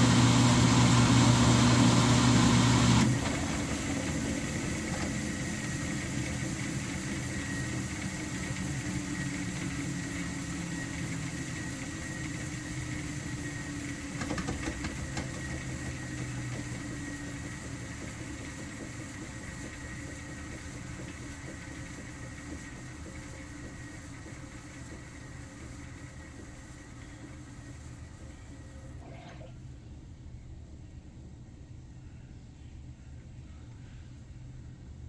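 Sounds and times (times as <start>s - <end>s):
washing machine humming: 0.0s - 30.6s
knocking in washing machine: 3.1s - 6.4s, 14.0s - 21.7s.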